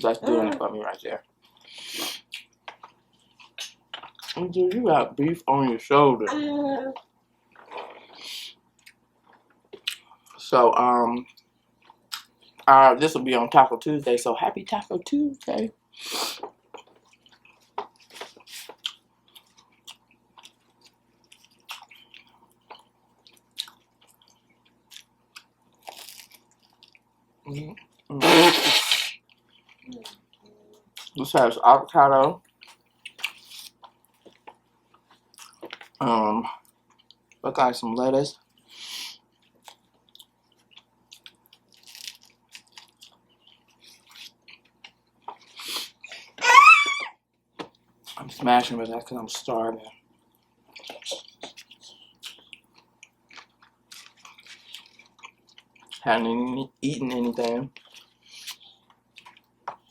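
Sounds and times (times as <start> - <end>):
person chewing food: 1.2 - 4.4, 7.0 - 10.4, 11.3 - 12.7, 15.4 - 31.2, 32.3 - 36.0, 36.6 - 37.4, 38.4 - 46.4, 49.9 - 56.1, 56.9 - 59.9.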